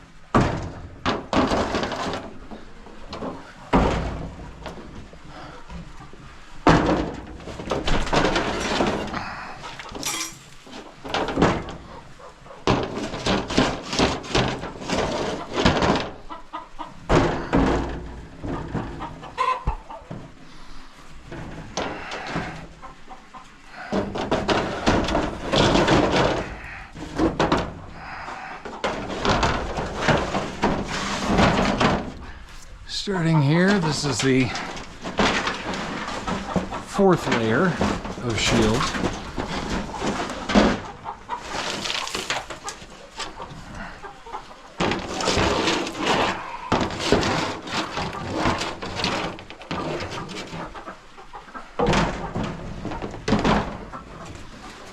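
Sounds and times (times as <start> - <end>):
chickens clucking: 0.0 - 54.9
metal scraper scraping and knocking: 28.8 - 40.7.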